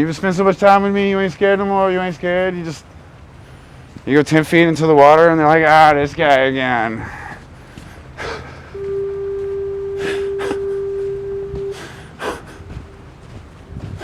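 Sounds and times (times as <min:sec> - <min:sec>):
short breathy puffs: 0:07.0 - 0:08.8, 0:11.7 - 0:13.0
foghorn blast: 0:08.7 - 0:14.0.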